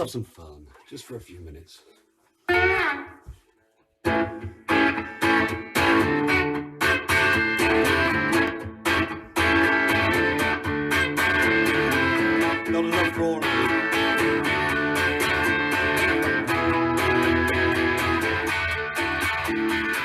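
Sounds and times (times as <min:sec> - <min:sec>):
strummed guitar chords: 0:02.5 - 0:03.4, 0:04.0 - 0:20.0
guitar chord sliding down: 0:04.1 - 0:12.7, 0:13.4 - 0:20.0.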